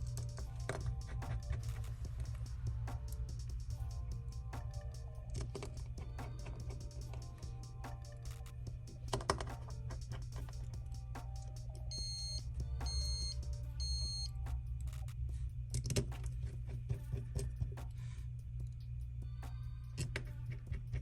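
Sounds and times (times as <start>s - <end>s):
background music: 0.0s - 21.0s
short high electronic beeps: 11.9s - 14.3s.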